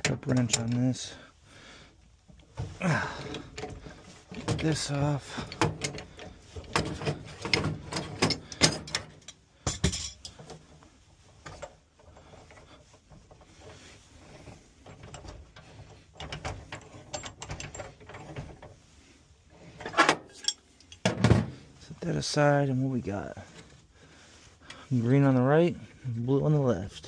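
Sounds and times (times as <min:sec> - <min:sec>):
wrenches clicking and scraping on pipe: 0:00.0 - 0:01.2, 0:02.0 - 0:21.1.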